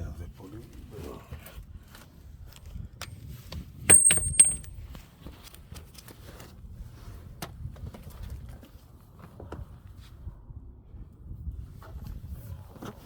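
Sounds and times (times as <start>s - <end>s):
metal tools clinking on engine parts: 3.9s - 4.7s
sharp ringing metallic clanks: 3.9s - 4.7s.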